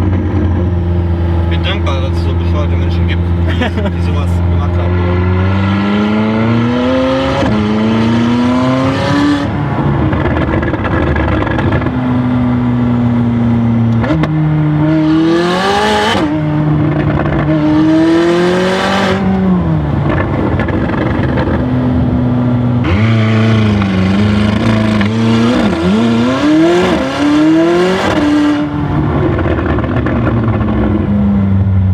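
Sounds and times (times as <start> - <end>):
exhaust crackles and pops: 0.0 - 5.1, 9.3 - 14.8, 16.1 - 17.8, 19.0 - 26.2, 28.8 - 31.9
car engine revving: 0.0 - 31.9.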